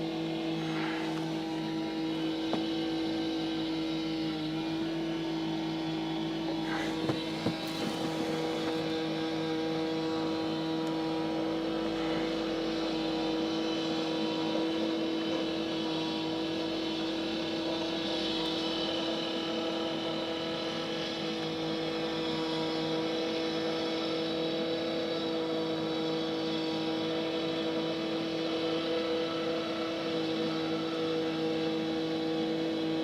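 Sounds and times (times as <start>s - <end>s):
construction machinery engine running: 0.0s - 33.0s.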